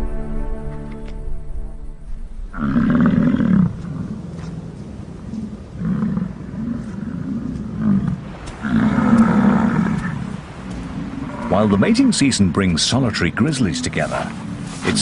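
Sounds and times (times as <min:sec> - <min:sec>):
bison bellowing: 0:02.5 - 0:04.5, 0:05.4 - 0:11.7.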